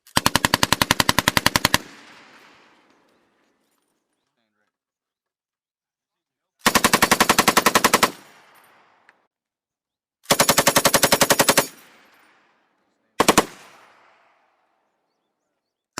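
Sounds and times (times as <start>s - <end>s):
machine gun firing in bursts: 0.1s - 2.9s, 6.6s - 9.0s, 10.3s - 12.5s, 13.2s - 14.3s
gunfire echo rolling away: 0.1s - 3.7s, 7.8s - 9.1s, 10.3s - 14.8s.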